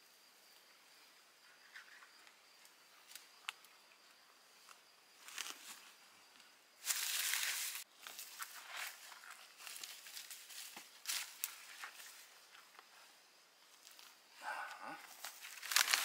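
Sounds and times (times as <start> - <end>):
faint crunching and rustling: 4.6 - 6.0, 6.8 - 14.2, 14.8 - 16.0.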